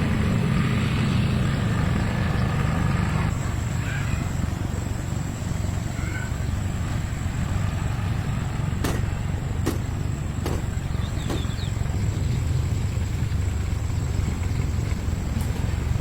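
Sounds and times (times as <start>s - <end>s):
engine running low: 0.0s - 16.0s
sharp knocks: 8.8s - 11.7s.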